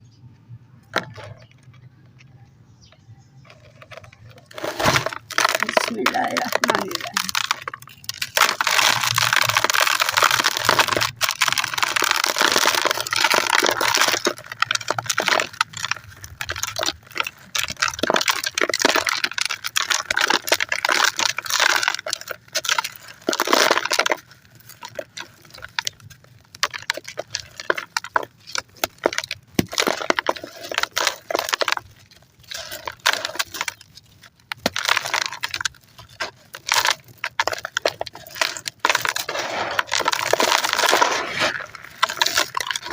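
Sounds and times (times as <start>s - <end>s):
concrete crumbling and crunching: 3.4s - 42.9s.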